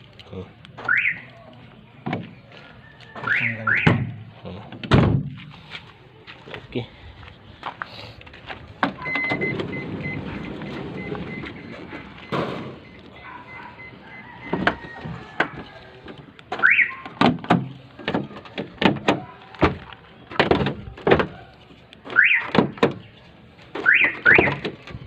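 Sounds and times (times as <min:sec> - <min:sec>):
car alarm siren chirps: 0:00.8 - 0:01.2, 0:03.1 - 0:04.2, 0:09.0 - 0:15.8, 0:16.6 - 0:17.2, 0:22.2 - 0:22.5, 0:23.8 - 0:24.6.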